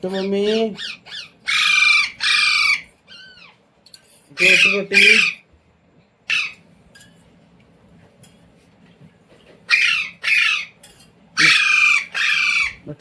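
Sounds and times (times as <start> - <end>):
parrot squawking: 0.0 - 3.6, 4.3 - 5.5, 6.3 - 6.7, 9.6 - 10.8, 11.4 - 13.0.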